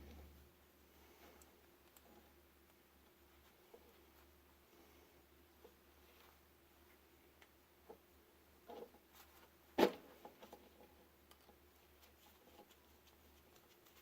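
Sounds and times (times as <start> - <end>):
small clicks and taps: 1.3 - 3.8, 10.2 - 14.0.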